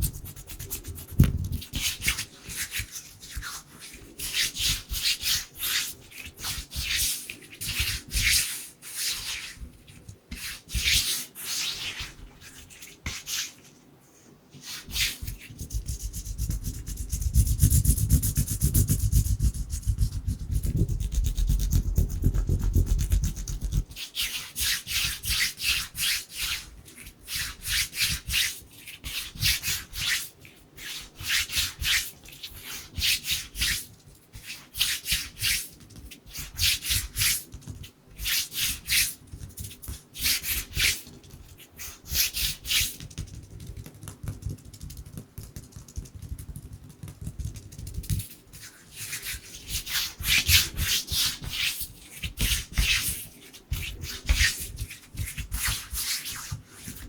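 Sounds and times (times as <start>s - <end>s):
hands rubbing together: 0.0s - 4.8s, 14.6s - 30.3s, 47.6s - 57.0s.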